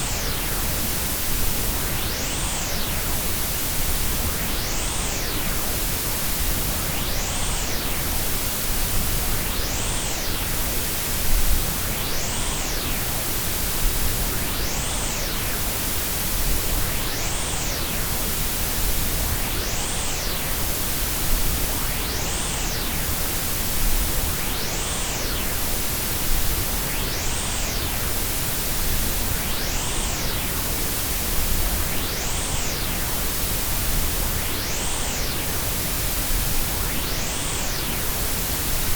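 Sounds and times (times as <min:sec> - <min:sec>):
full-range noise hiss: 0:00.0 - 0:38.9.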